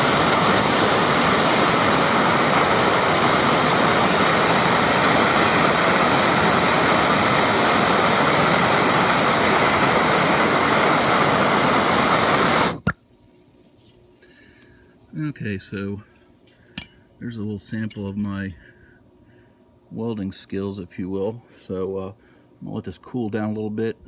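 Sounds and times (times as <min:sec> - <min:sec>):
gas torch flame hissing: 0:00.0 - 0:13.0.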